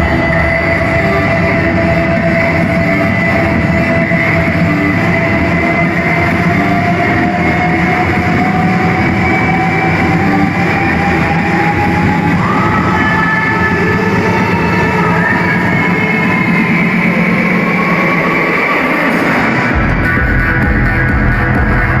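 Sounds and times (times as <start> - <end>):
electronic dance music: 0.0 - 22.0.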